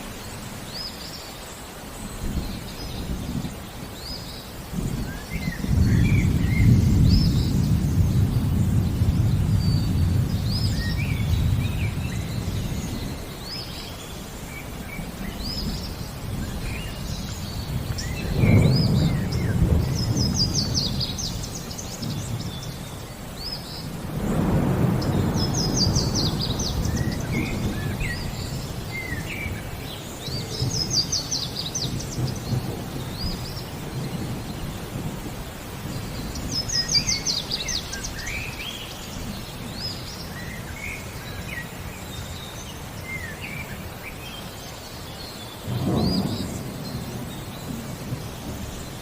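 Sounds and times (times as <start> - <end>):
songbirds chirping: 0.0 - 49.0
steady rain: 0.0 - 49.0
rolling thunder: 4.7 - 13.7, 14.5 - 40.5, 45.6 - 49.0.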